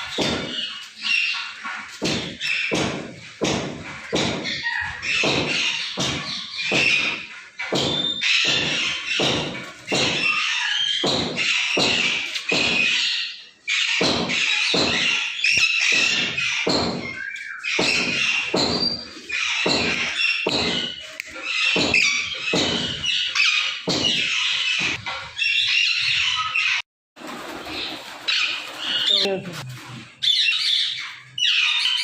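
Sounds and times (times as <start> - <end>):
parrots squawking: 4.3 - 26.8.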